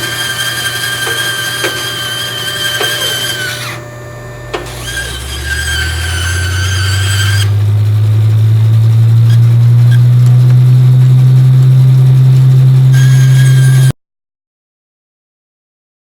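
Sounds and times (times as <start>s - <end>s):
loud low steady hum: 3.6s - 13.9s.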